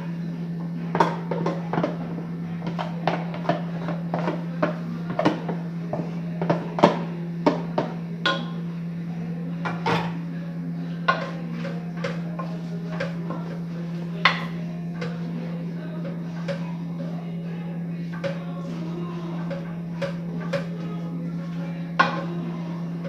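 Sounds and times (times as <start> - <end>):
steady low hum: 0.0 - 23.0
spoon clinking against pan: 8.2 - 8.7.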